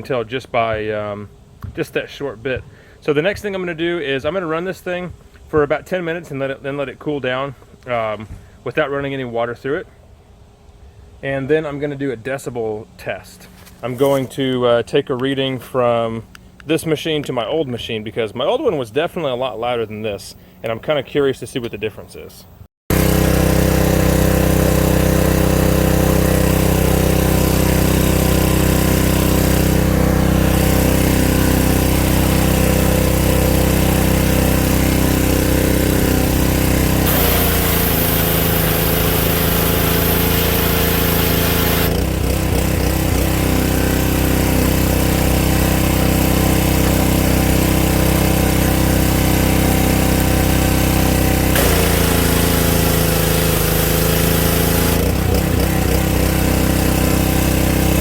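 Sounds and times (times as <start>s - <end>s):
pressure washer engine running: 22.9s - 58.0s.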